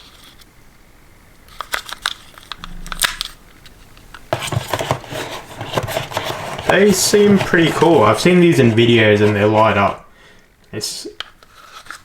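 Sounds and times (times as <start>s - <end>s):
rustling and crinkling handling: 4.1s - 10.1s, 11.2s - 12.0s.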